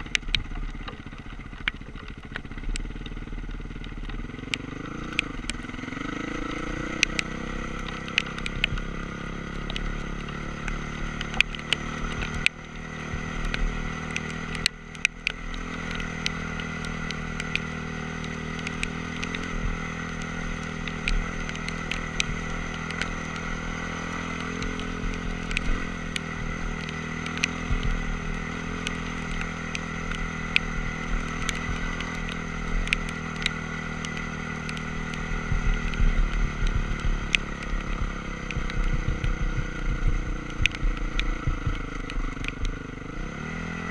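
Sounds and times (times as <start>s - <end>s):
sharp clicks and knocks: 0.0s - 43.8s
dirt bike engine running: 0.0s - 43.9s.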